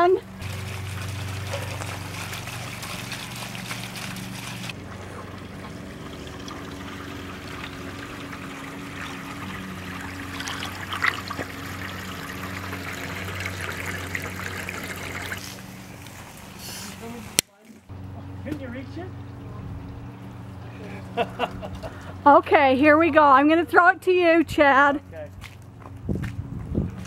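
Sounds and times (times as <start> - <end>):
water trickling and splashing: 0.4 - 17.3.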